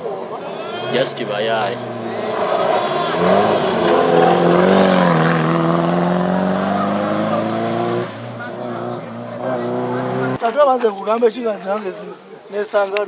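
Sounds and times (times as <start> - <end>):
car engine at high revs: 1.1 - 10.4.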